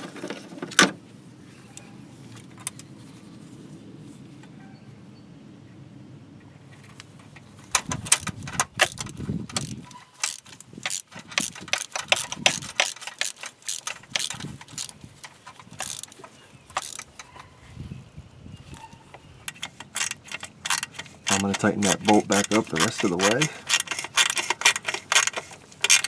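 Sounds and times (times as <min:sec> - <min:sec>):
metal hand tools clicking: 0:07.8 - 0:15.0, 0:15.6 - 0:17.4, 0:19.5 - 0:26.0.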